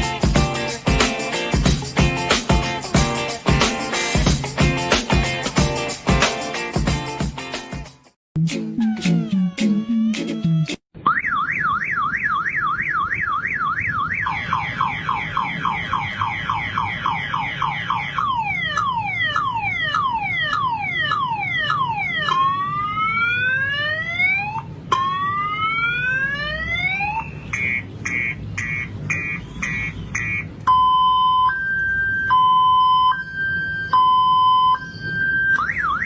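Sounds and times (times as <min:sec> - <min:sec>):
motorcycle alarm siren: 0:11.0 - 0:36.0.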